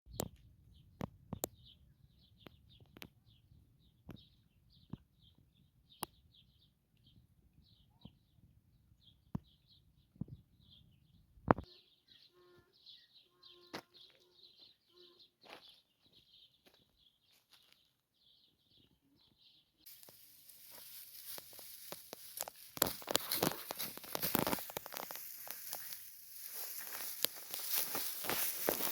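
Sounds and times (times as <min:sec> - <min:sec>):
birds chirping: 0:00.7 - 0:28.9
rustling tearing noise: 0:19.9 - 0:28.9.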